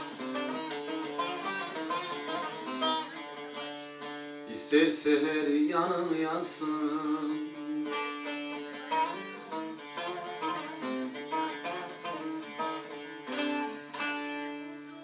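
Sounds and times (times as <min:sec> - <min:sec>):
plucked long-necked lute melody: 0:00.0 - 0:15.0.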